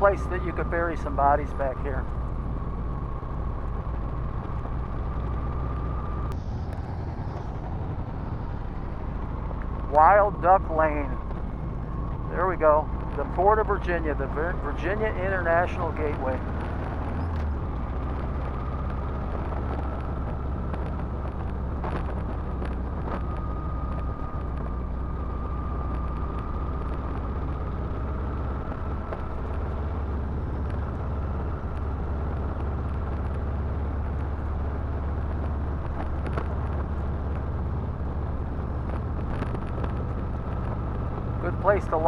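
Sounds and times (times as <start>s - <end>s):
faint wavering whine: 0.0s - 21.3s
motorcycle engine rumble: 0.0s - 42.0s
wind and road noise: 0.0s - 42.0s.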